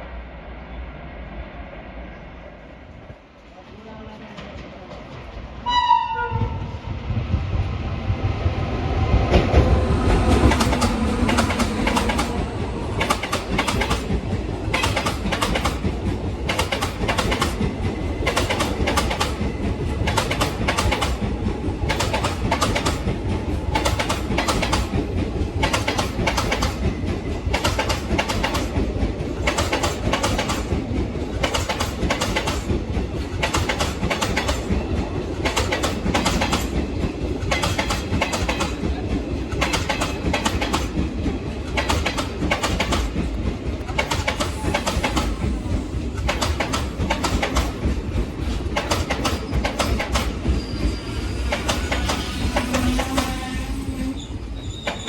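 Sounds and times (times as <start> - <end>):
train horn: 5.6 - 6.8, 52.4 - 54.4
train wheels clicking over rail joints: 9.2 - 53.9.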